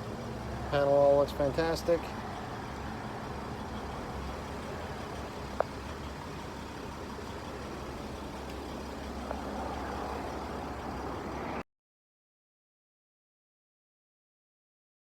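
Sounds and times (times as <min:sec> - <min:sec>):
motor vehicle rumbling: 0:00.0 - 0:11.6.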